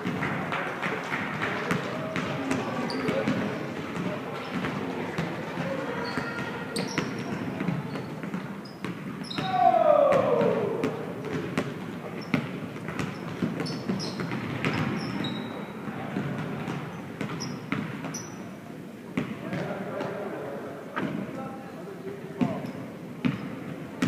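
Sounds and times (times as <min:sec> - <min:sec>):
basketballs bouncing on gym floor: 0:00.0 - 0:18.2, 0:23.2 - 0:23.7
sneaker squeaks: 0:02.6 - 0:03.6, 0:05.9 - 0:09.6, 0:12.1 - 0:15.8, 0:16.7 - 0:18.5.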